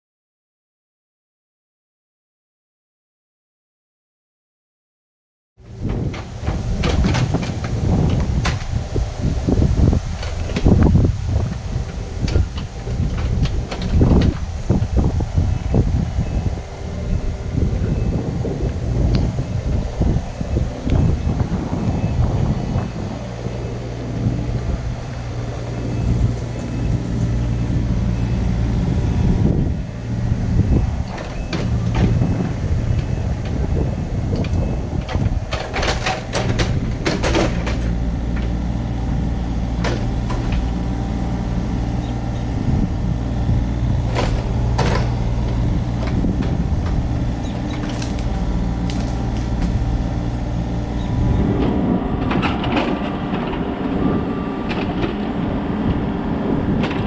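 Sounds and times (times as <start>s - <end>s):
excavator diesel engine running: 5.6s - 57.0s
sharp cracks and clanks: 35.1s - 38.6s.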